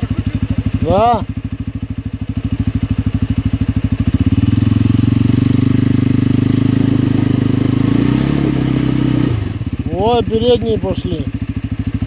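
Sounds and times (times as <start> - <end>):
motorbike engine revving: 0.0 - 12.0.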